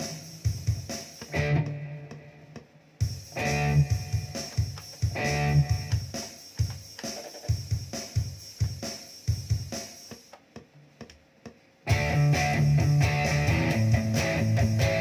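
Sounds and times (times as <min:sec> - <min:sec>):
electric guitar: 0:00.0 - 0:02.5, 0:03.3 - 0:07.6, 0:11.8 - 0:15.0
drum machine beat: 0:00.0 - 0:15.0.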